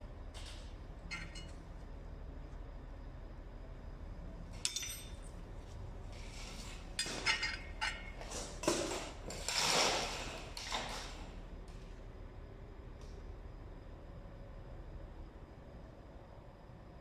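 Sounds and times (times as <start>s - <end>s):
metal clinks and knocks: 4.6s - 5.3s, 7.0s - 8.4s.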